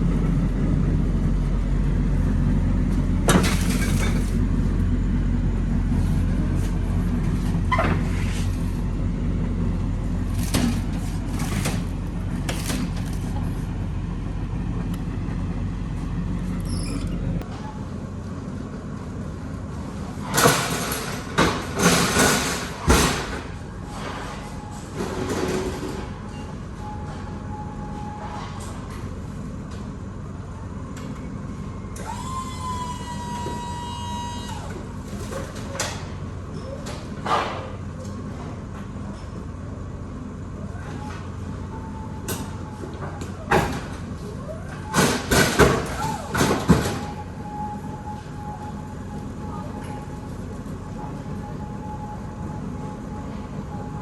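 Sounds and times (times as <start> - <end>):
pallet jack humming: 0.0 - 17.9, 30.6 - 37.7, 40.4 - 54.0.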